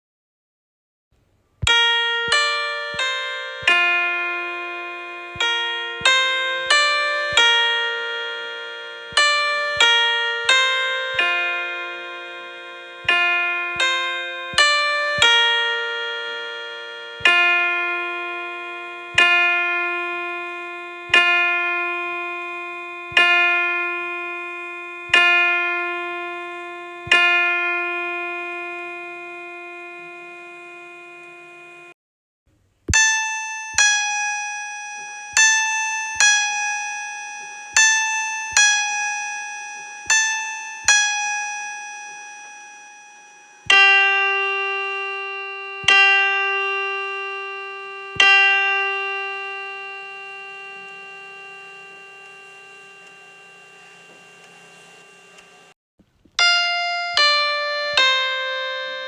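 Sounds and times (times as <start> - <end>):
piano imitating bells tolling: 1.7 - 31.2, 39.7 - 55.8.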